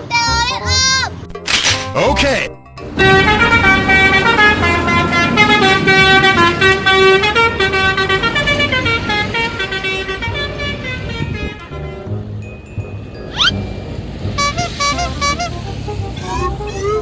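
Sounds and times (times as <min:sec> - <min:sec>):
bus horn melody: 0:02.8 - 0:12.4, 0:13.6 - 0:17.0.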